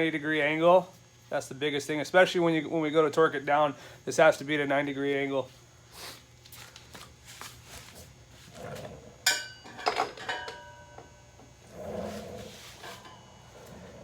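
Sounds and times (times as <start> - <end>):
ringing metal clanks: 9.3 - 11.0.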